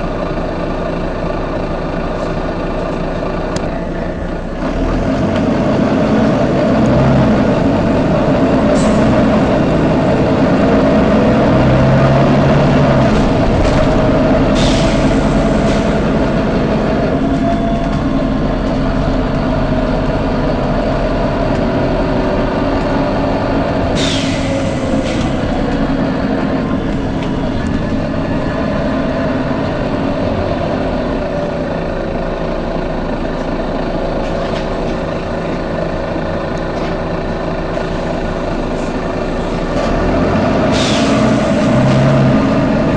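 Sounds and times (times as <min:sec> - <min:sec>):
diesel bus engine humming: 0:00.0 - 0:42.9
compressed air hisses: 0:24.0 - 0:25.2.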